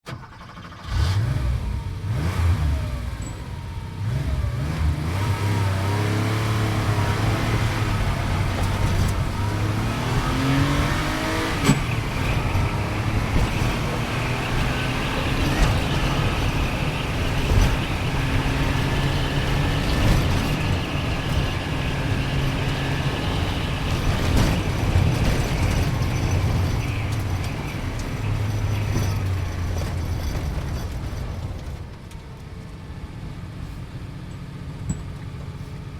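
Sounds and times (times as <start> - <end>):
sports car engine revving: 0.8 - 29.4.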